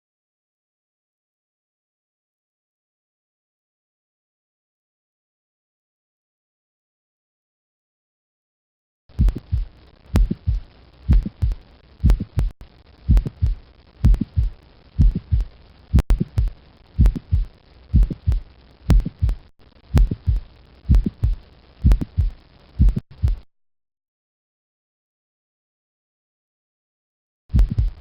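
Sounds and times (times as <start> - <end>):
heart murmur: 9.1 - 23.5, 27.5 - 28.0
heartbeat through stethoscope: 9.1 - 23.5, 27.5 - 28.0.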